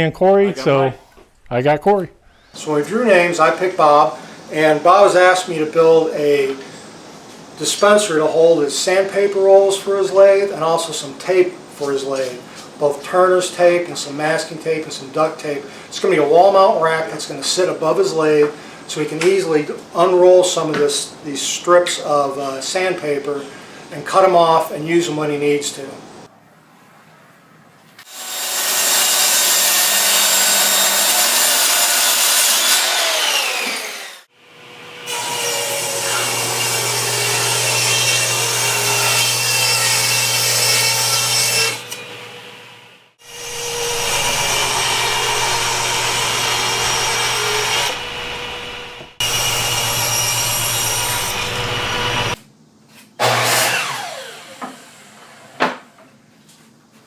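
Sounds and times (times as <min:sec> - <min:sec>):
power saw cutting wood: 0:02.6 - 0:07.0, 0:28.0 - 0:52.4, 0:53.2 - 0:55.5
saw motor winding down whine: 0:32.6 - 0:35.1, 0:41.8 - 0:52.4, 0:53.4 - 0:55.0.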